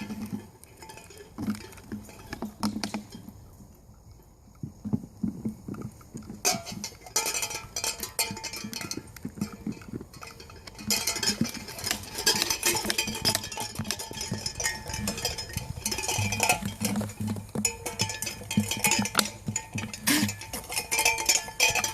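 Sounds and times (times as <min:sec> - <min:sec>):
puppies scuffling: 0:04.5 - 0:21.9.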